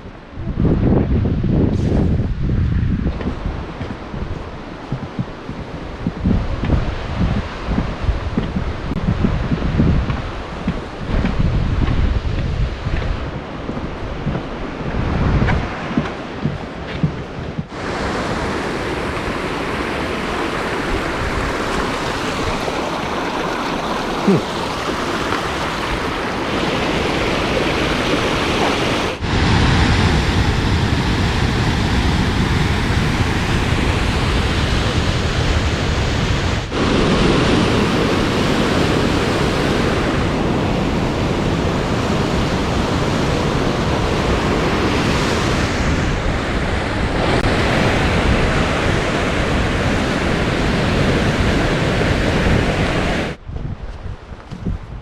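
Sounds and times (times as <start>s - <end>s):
rush of fast-flowing water: 17.6s - 53.4s.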